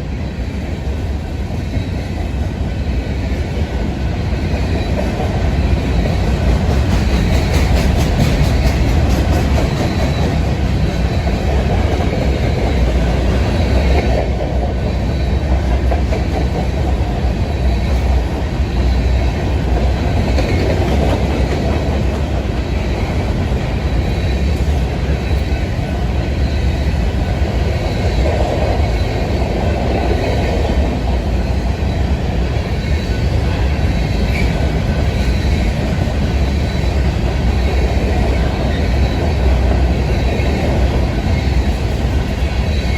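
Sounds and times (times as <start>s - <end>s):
freight train rolling past: 0.0s - 42.9s
wheels clacking over rail joints: 4.8s - 18.2s.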